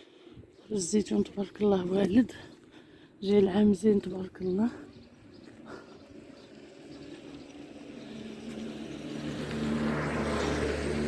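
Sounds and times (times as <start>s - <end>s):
vehicle engine approaching: 3.8s - 11.0s.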